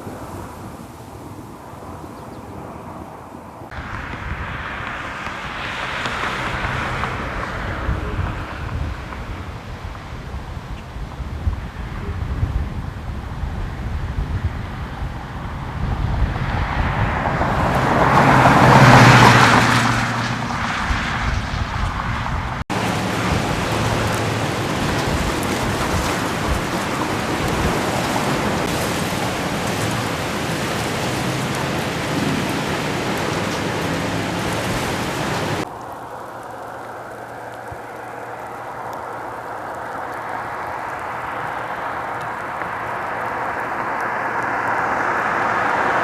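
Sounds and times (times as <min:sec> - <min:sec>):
car passing: 0:00.0 - 0:12.2, 0:12.9 - 0:46.0
rain and hail pelting down: 0:03.7 - 0:12.0, 0:16.4 - 0:20.0, 0:21.8 - 0:46.0.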